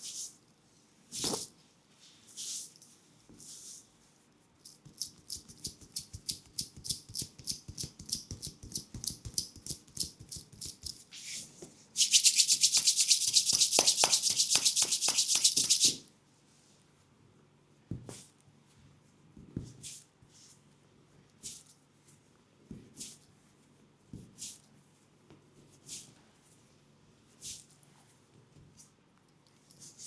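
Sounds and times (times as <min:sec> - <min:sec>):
hands rubbing a leg: 0:12.0 - 0:16.0.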